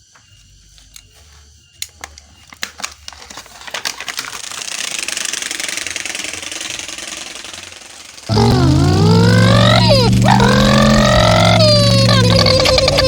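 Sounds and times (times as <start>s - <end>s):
bicycle spokes rattling: 3.8s - 8.3s.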